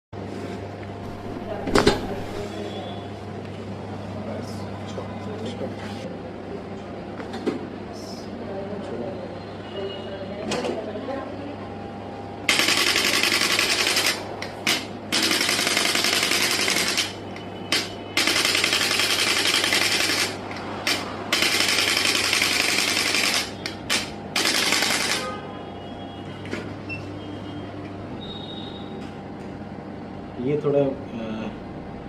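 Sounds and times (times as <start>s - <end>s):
massage gun running: 12.5s - 25.2s.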